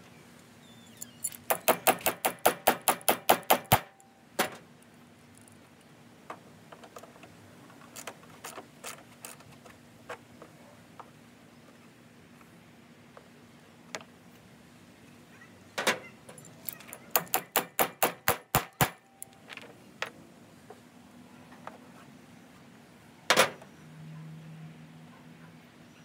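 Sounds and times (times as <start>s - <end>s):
sharp metallic taps: 1.5s - 4.5s, 17.1s - 19.0s.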